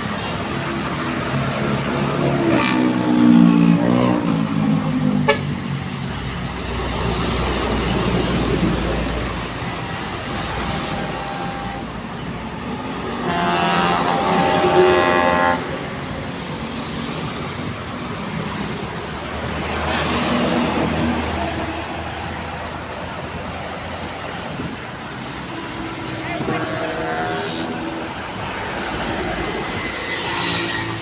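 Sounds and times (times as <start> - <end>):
highway traffic: 0.0 - 31.0
vehicle air horn blast: 5.2 - 5.5, 10.8 - 11.9, 13.2 - 15.8.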